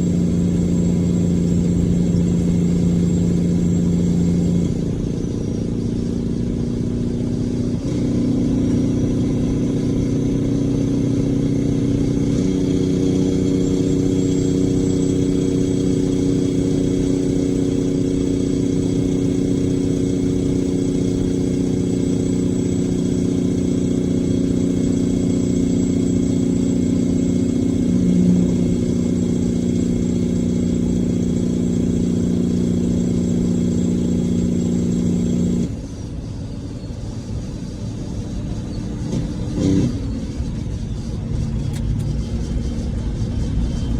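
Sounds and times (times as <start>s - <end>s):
truck diesel engine droning: 0.0s - 43.9s.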